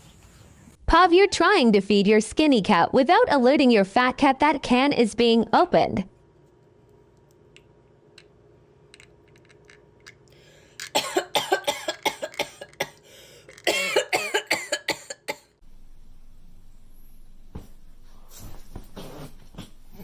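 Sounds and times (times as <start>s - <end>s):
person fake coughing: 10.8s - 13.0s, 13.6s - 15.5s.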